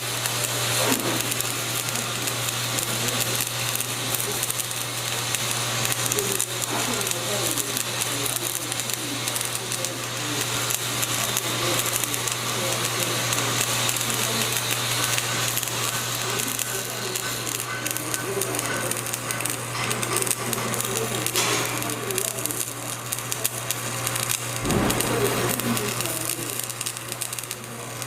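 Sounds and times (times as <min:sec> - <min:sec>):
welding arc crackling and sizzling: 0:00.0 - 0:28.0
steady low hum: 0:24.1 - 0:27.8.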